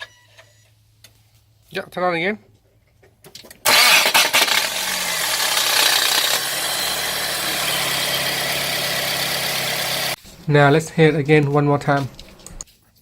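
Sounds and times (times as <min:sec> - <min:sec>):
car engine idling: 0:03.7 - 0:10.4.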